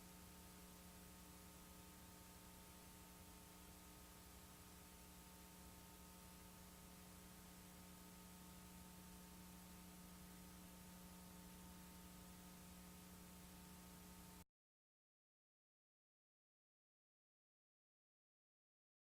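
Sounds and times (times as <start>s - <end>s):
faint electrical hum with hiss: 0.0s - 14.4s.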